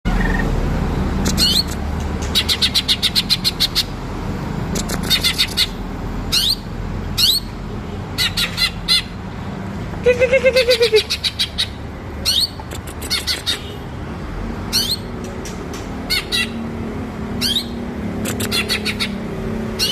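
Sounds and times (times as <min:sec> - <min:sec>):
bird singing high repeated notes: 0:00.1 - 0:00.5.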